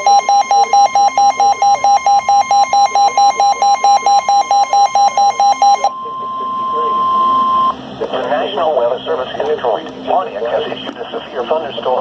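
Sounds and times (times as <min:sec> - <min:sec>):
steady warning alarm tone: 0:00.0 - 0:08.0.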